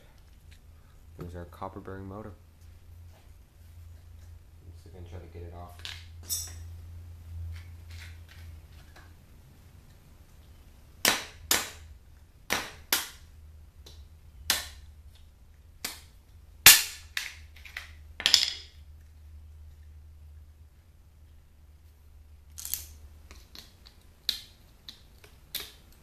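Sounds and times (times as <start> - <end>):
faint low hum: 0.0 - 11.0, 17.3 - 26.0.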